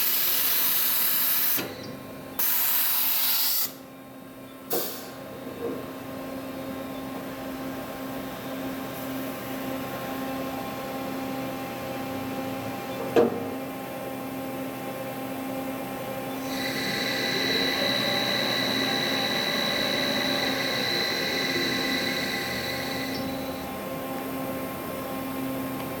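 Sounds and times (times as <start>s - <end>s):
milling machine humming: 14.5s - 26.0s
high machine whine: 15.2s - 25.8s.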